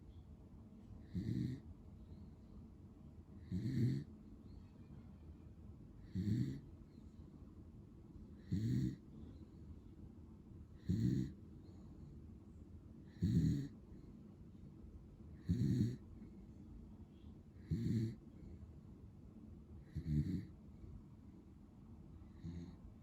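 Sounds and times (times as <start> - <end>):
dog snoring: 1.0 - 1.7, 3.4 - 4.1, 6.0 - 6.7, 8.4 - 9.0, 10.8 - 11.4, 13.0 - 13.8, 15.4 - 16.3, 17.6 - 18.4, 19.8 - 20.6, 22.2 - 23.0.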